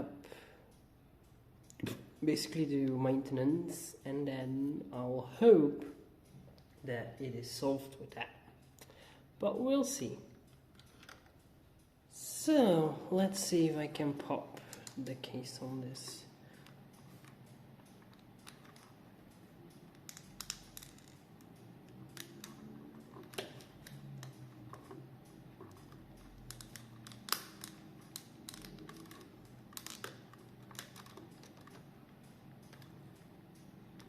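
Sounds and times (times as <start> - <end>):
screwdriver prying plastic clips: 25.6 - 31.8.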